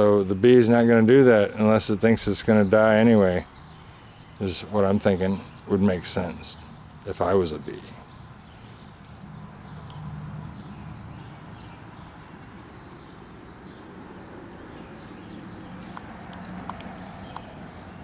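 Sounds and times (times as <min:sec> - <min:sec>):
small ticks: 0:15.6 - 0:17.5.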